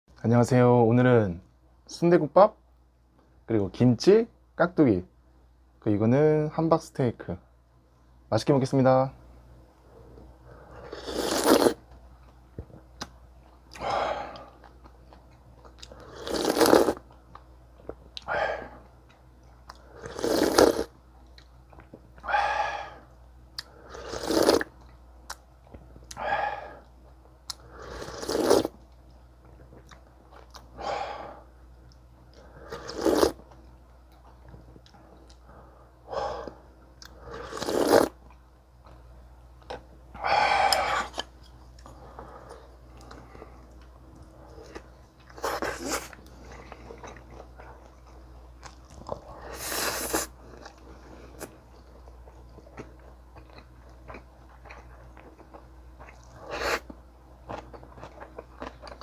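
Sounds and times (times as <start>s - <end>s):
loud bites and chewing: 10.8s - 11.8s, 13.7s - 17.4s, 19.1s - 21.5s, 23.6s - 25.4s, 27.5s - 28.8s, 32.7s - 33.5s, 36.3s - 38.4s, 39.6s - 59.0s.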